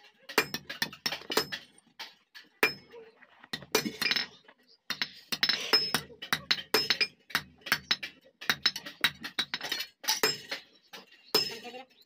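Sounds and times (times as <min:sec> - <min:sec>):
hammer tapping steel on anvil: 0:04.9 - 0:10.6.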